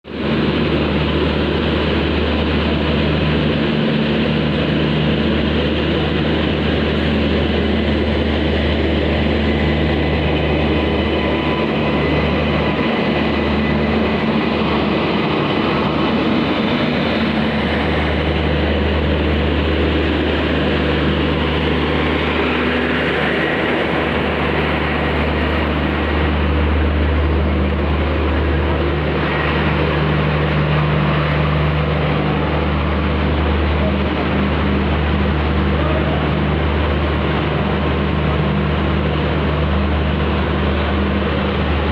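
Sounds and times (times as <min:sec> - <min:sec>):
train engine drone: 0:00.0 - 0:41.9
faint high whine: 0:00.2 - 0:41.9.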